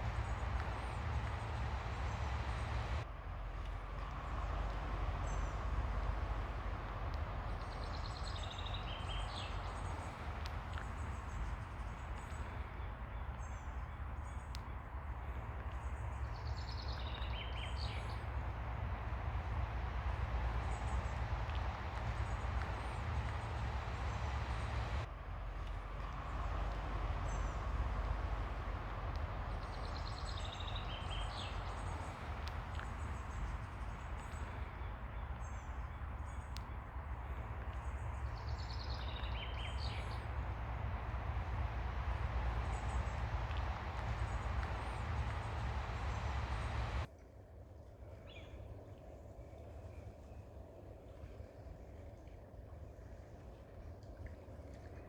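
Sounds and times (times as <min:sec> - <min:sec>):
birds chirping: 0:00.0 - 0:03.0, 0:03.9 - 0:47.1
ocean surf washing on beach: 0:17.0 - 0:47.1.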